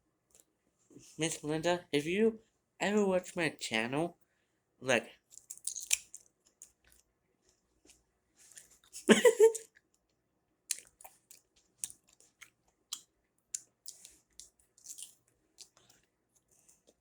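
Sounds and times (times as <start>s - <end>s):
mouth clicks and smacks: 5.3s - 7.0s, 10.7s - 16.1s.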